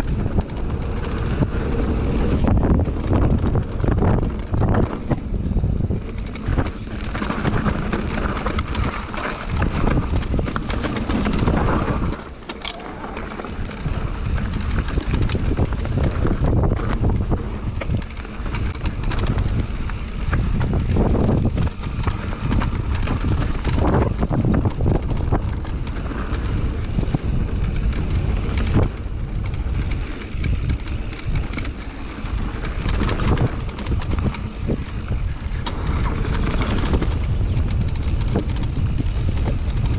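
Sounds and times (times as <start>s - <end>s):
bike chain and frame rattling: 0.0s - 39.9s
bike tyres rumbling over dirt: 0.0s - 39.9s
wind buffeting microphone: 0.0s - 39.9s.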